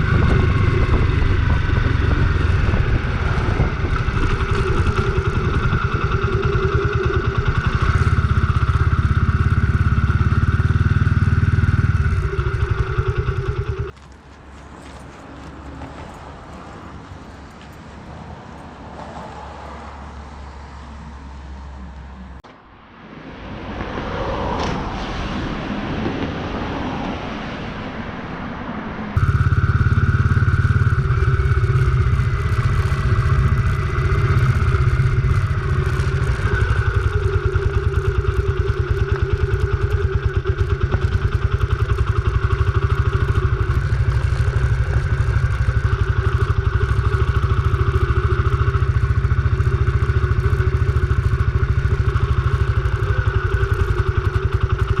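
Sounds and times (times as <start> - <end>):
motorcycle engine running: 0.0 - 14.2, 29.2 - 55.0.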